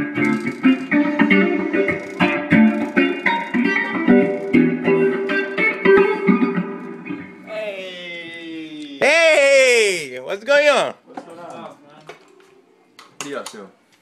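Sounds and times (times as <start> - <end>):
plucked guitar notes: 0.0 - 7.4.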